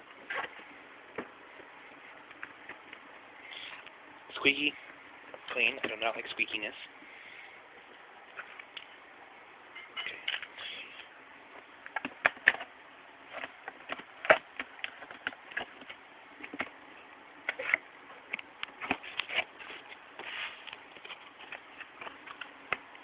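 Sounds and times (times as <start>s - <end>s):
cardboard and plastic rustling: 11.6s - 16.8s, 17.5s - 23.0s.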